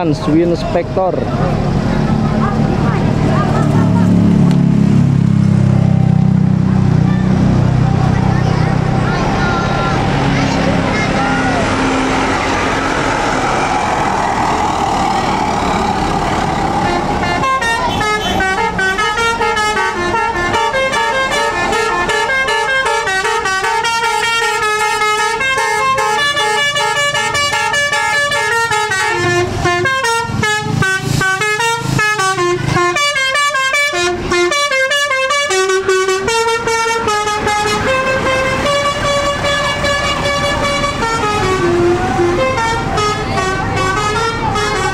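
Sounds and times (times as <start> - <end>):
rushing noise: 7.3 - 17.9
musical air horn tune: 16.8 - 44.9.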